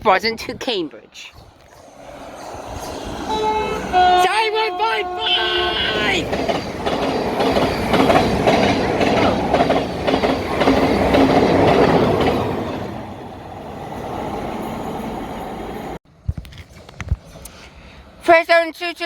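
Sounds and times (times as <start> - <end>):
electric train wheels clattering: 5.2 - 13.4.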